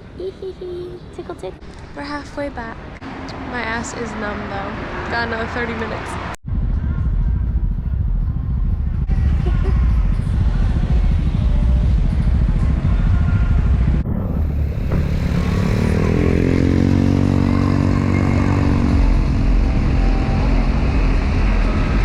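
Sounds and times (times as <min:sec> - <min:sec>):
scooter engine accelerating: 0:14.4 - 0:22.0.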